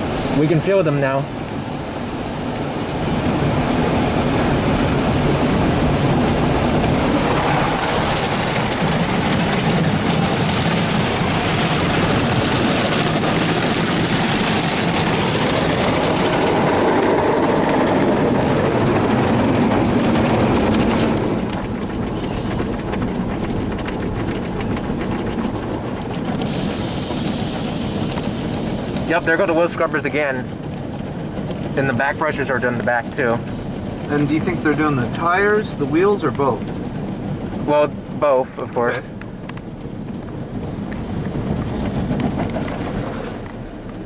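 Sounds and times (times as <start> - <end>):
car wash brushes swishing: 5.6 - 30.4, 40.9 - 44.0.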